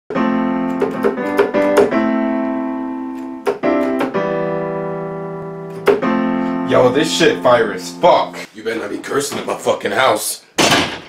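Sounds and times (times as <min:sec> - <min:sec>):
piano chords on keyboard: 0:00.1 - 0:08.5.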